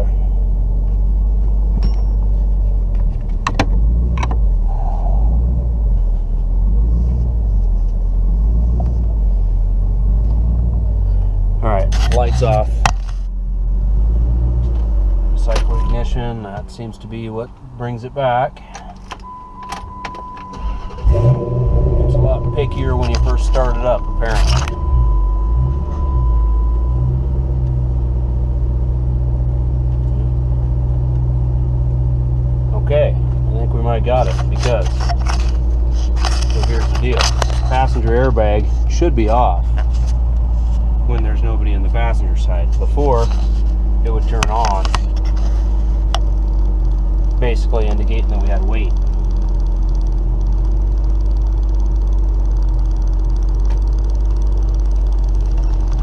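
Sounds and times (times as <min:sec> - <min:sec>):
car engine idling: 0:00.0 - 0:56.0
thin electronic tone: 0:15.6 - 0:16.5, 0:19.2 - 0:27.6.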